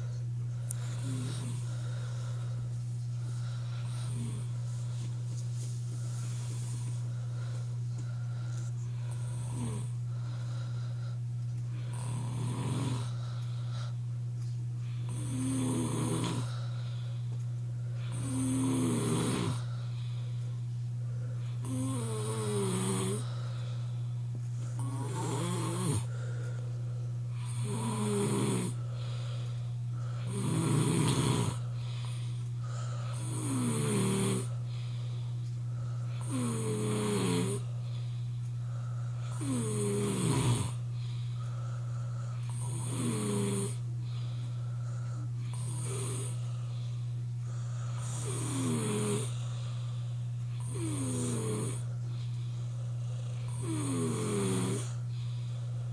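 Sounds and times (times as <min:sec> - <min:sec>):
steady low hum: 0:00.0 - 0:55.9
person snoring loudly: 0:00.8 - 0:01.9, 0:03.8 - 0:04.6, 0:09.0 - 0:10.0, 0:11.8 - 0:13.2, 0:15.1 - 0:16.6, 0:18.0 - 0:19.7, 0:21.6 - 0:23.3, 0:24.8 - 0:26.2, 0:27.4 - 0:28.8, 0:30.2 - 0:31.6, 0:32.6 - 0:34.6, 0:36.1 - 0:37.7, 0:39.2 - 0:40.8, 0:42.4 - 0:43.8, 0:45.4 - 0:46.5, 0:47.5 - 0:49.7, 0:50.6 - 0:51.9, 0:53.1 - 0:55.0.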